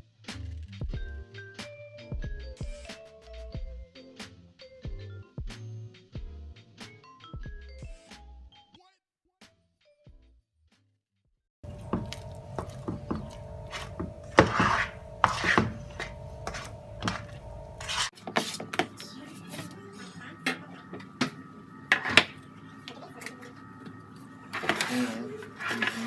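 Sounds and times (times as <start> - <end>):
background music: 0.0 - 8.7, 11.6 - 26.0
spatula knocking in a bowl: 11.7 - 18.1
spatula scraping swishes: 12.1 - 18.8.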